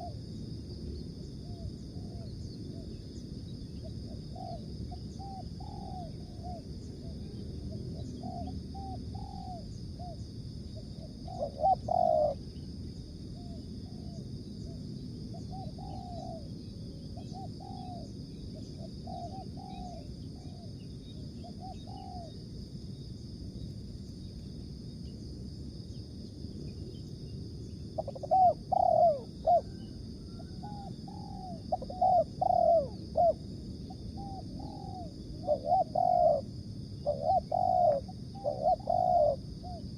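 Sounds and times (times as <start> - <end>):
doves cooing: 5.2 - 6.6, 8.2 - 9.6, 11.3 - 12.4, 17.2 - 18.0, 19.0 - 20.6, 28.0 - 33.4, 34.2 - 39.8.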